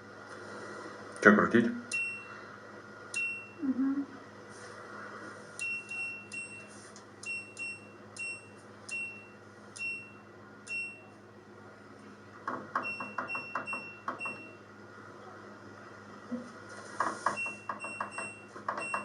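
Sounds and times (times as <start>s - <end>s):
washing machine panel beeps: 1.9s - 2.3s, 3.2s - 3.6s, 5.6s - 11.1s, 12.8s - 14.6s, 17.3s - 19.0s.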